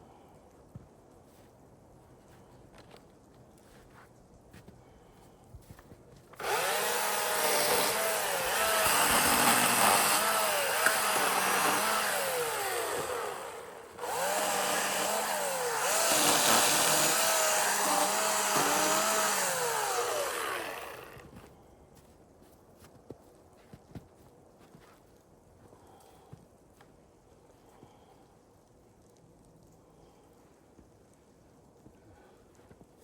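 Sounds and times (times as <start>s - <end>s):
battery chainsaw cutting wood: 6.4s - 21.4s.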